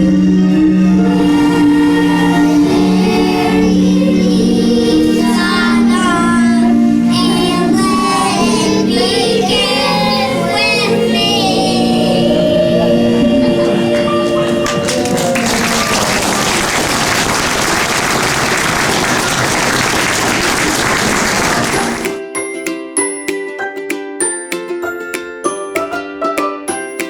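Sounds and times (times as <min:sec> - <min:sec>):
backing track: 0:00.0 - 0:15.7
children singing: 0:00.0 - 0:22.1.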